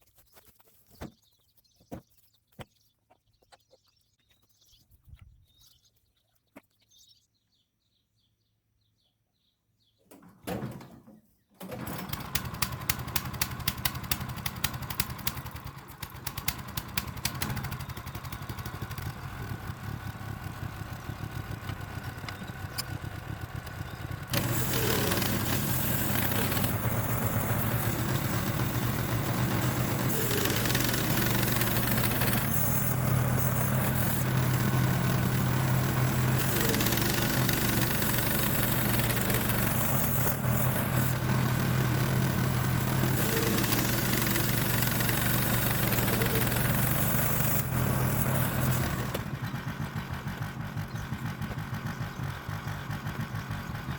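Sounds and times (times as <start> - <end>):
sawmill engine running: 11.6 - 53.9.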